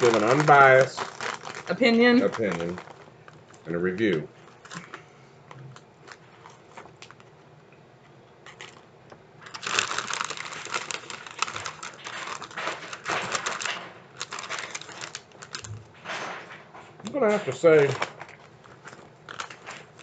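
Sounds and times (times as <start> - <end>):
foil chip bags crackling: 0.0 - 5.1, 8.5 - 15.8, 17.0 - 20.0.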